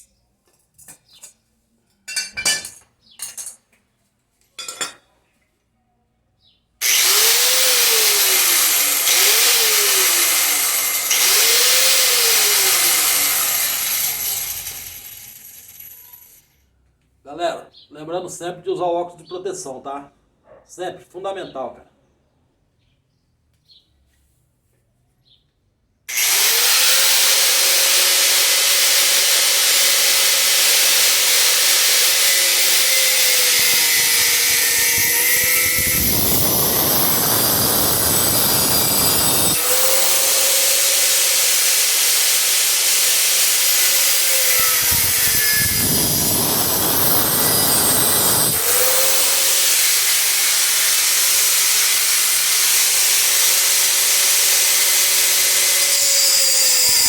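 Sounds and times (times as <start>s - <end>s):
electric grinder whine: 6.8s - 16.4s, 26.1s - 57.0s
harsh grinding noise: 6.8s - 16.4s, 26.1s - 57.0s.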